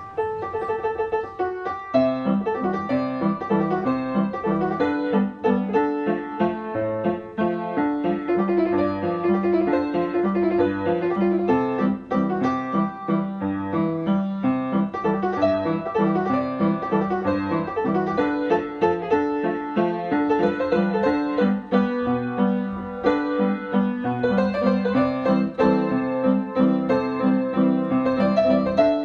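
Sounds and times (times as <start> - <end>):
fast piano music: 0.0 - 29.0.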